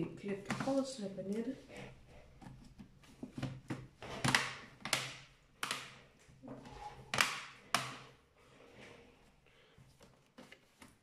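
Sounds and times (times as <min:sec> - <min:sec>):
plastic clips snapping into place: 0:03.7 - 0:06.0, 0:07.1 - 0:08.0.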